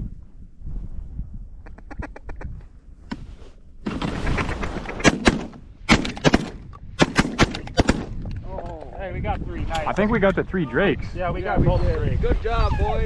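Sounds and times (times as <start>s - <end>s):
shotgun blasts: 5.0s - 8.3s.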